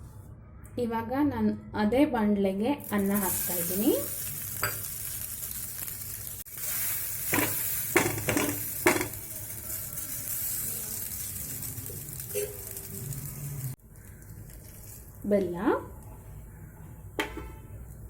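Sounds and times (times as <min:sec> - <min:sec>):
rice sizzling in a pan: 0:02.8 - 0:16.6.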